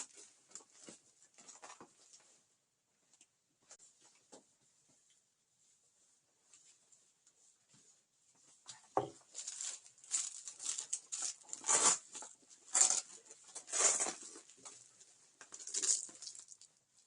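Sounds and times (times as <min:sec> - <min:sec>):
short rasping rips: 0:10.7 - 0:12.1.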